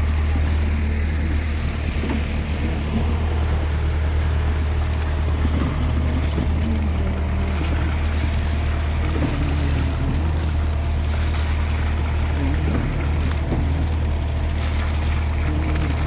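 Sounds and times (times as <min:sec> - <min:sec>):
low engine drone: 0:00.0 - 0:16.0.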